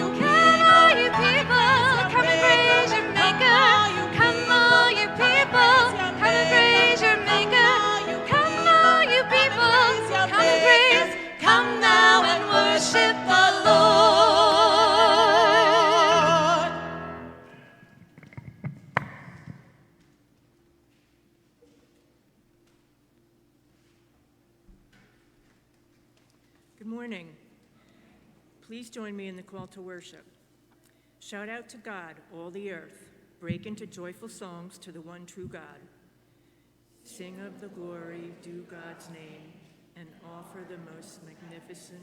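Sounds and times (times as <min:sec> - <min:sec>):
classical solo singing: 0:00.0 - 0:17.2
sustained keyboard accompaniment: 0:00.0 - 0:18.6.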